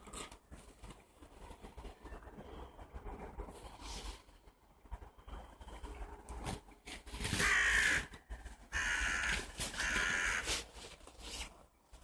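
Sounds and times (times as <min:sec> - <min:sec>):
crow cawing: 0:07.4 - 0:08.1, 0:08.7 - 0:10.6.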